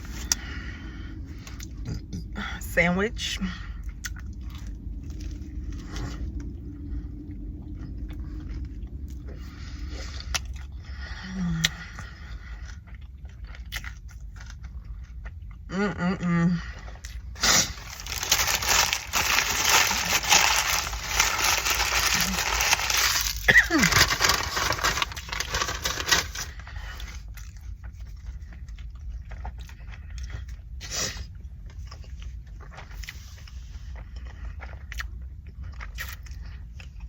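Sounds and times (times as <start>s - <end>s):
crunching while eating: 0.0s - 2.1s, 3.8s - 6.6s, 7.7s - 15.7s, 16.8s - 37.0s.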